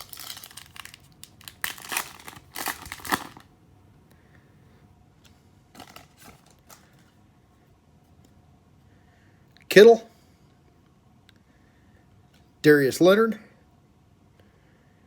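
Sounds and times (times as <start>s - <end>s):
card pack wrapper crinkling: 0.0s - 3.5s, 5.7s - 7.1s.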